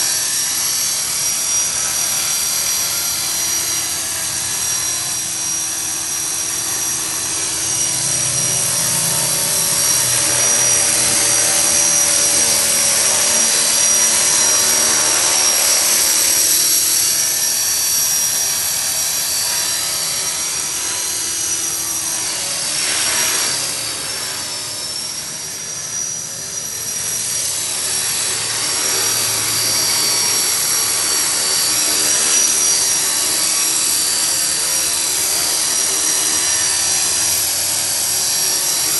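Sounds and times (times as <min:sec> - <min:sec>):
rc helicopter motor whine: 0:00.0 - 0:38.9.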